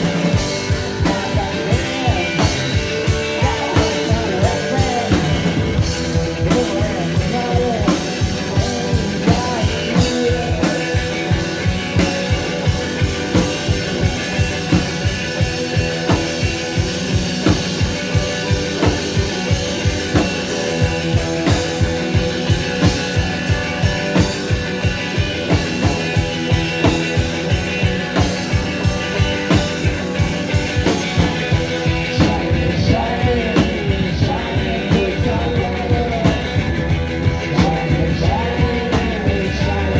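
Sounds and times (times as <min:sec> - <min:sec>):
drum kit beat: 0:00.0 - 0:39.9
electric guitars: 0:00.0 - 0:39.9
person singing: 0:00.1 - 0:12.1, 0:31.4 - 0:39.9.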